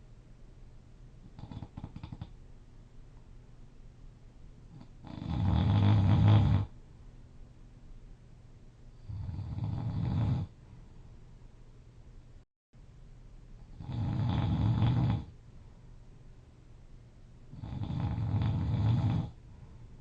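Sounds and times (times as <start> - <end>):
person snoring loudly: 1.4 - 2.3, 4.8 - 6.7, 9.0 - 10.5, 13.7 - 15.3, 17.5 - 19.4.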